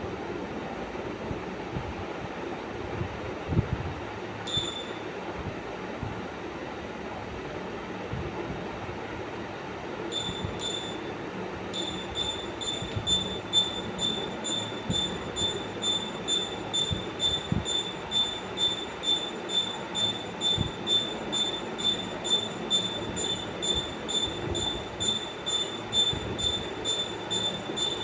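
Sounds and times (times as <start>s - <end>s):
high-pitched pulsing squealing whine: 10.1s - 11.1s, 11.8s - 28.0s.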